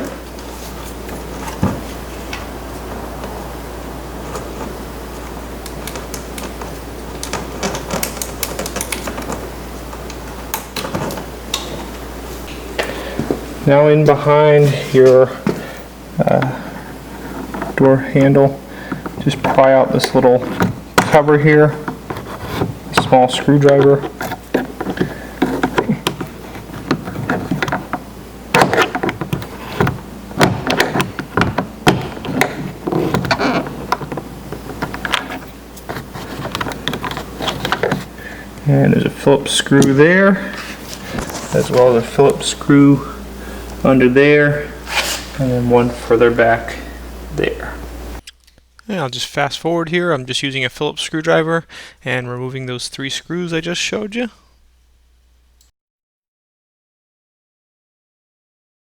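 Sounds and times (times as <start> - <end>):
screwdriver prying plastic trim: 7.2 - 9.3
plastic connectors clicking and rattling: 7.2 - 9.4
scrapes and knocks: 28.6 - 38.1.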